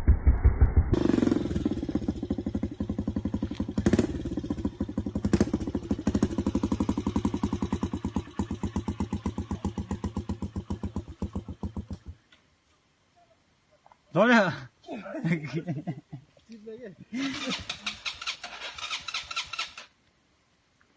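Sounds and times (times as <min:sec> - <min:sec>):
motorcycle engine idling: 0:00.0 - 0:12.2
motorcycle throttle blips: 0:00.0 - 0:12.2.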